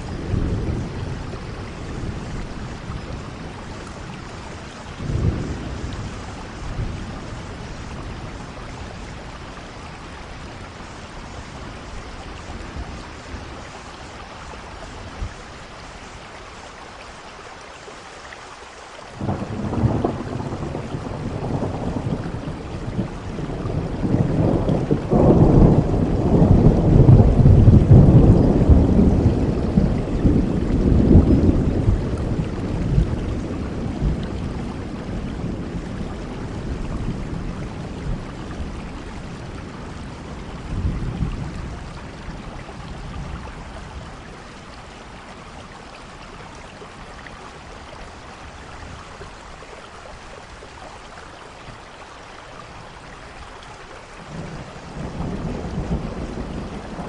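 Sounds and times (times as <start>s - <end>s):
rolling thunder: 0.0s - 9.4s, 19.2s - 44.6s, 54.2s - 57.0s
steady rain hiss: 0.0s - 57.0s.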